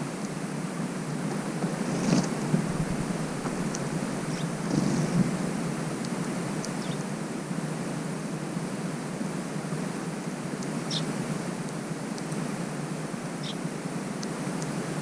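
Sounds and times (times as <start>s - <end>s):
steady rushing outdoor noise: 0.0s - 15.0s
small bird chirps: 4.3s - 4.6s, 6.6s - 7.0s, 10.8s - 11.1s, 13.4s - 13.6s.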